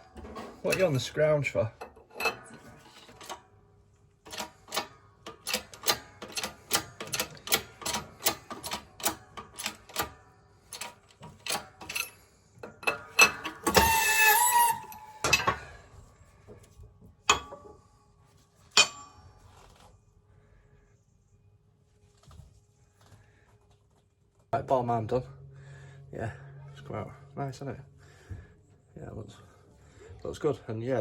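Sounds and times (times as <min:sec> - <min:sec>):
shop press clicking: 0:04.3 - 0:10.2.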